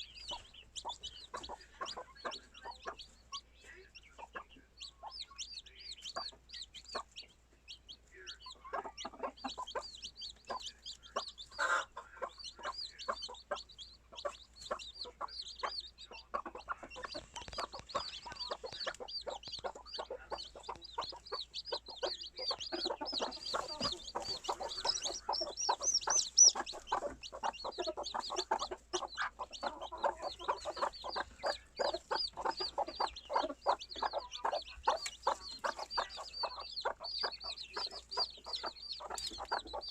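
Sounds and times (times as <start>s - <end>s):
chicks peeping: 0.0s - 39.9s.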